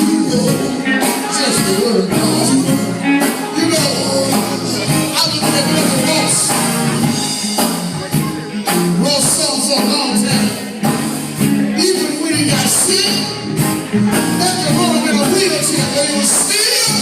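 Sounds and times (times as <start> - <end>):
gospel singing over a band: 0.0 - 7.4.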